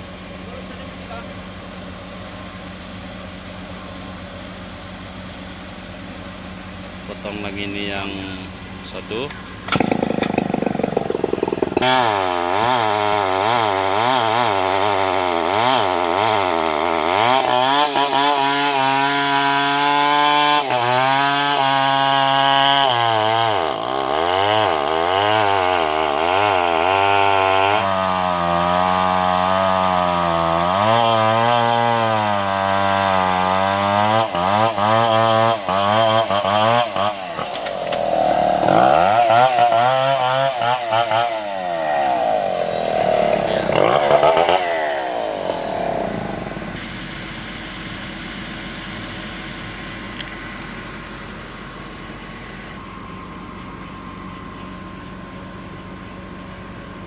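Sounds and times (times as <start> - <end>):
chainsaw cutting wood: 9.1 - 52.8.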